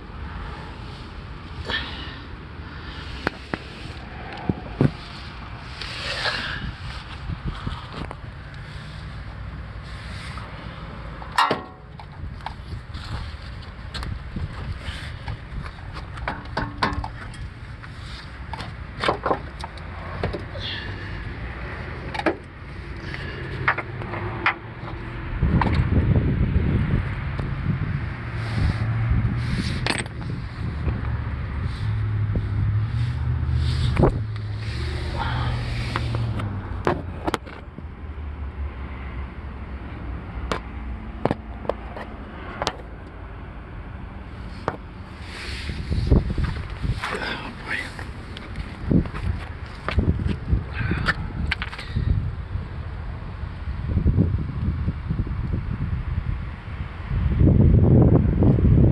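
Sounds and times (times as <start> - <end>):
car engine humming: 0.0 - 53.9
sharp clicks and knocks: 15.2 - 17.4.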